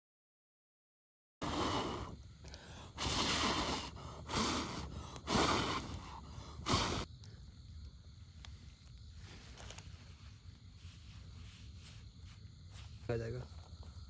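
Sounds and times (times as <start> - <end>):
person breathing out hard: 1.4 - 7.1.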